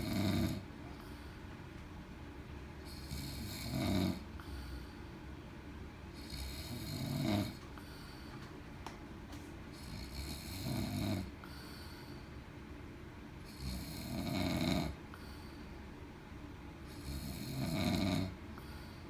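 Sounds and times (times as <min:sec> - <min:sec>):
man snoring loudly: 0:00.0 - 0:00.6, 0:02.9 - 0:04.3, 0:06.2 - 0:07.6, 0:09.8 - 0:11.3, 0:13.5 - 0:15.0, 0:16.9 - 0:18.4.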